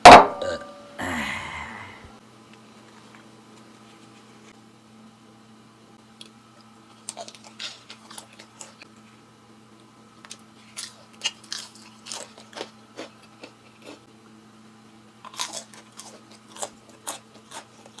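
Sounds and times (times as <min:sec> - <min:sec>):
faint steady hum: 0:00.0 - 0:18.0
crunchy food being chewed: 0:06.1 - 0:09.2, 0:09.8 - 0:14.1, 0:15.1 - 0:18.0.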